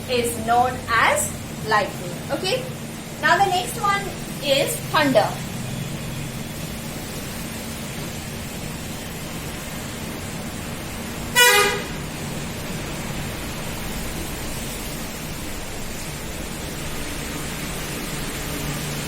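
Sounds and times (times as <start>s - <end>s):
low background hum: 0.0s - 19.0s
short horn toot: 11.3s - 12.0s.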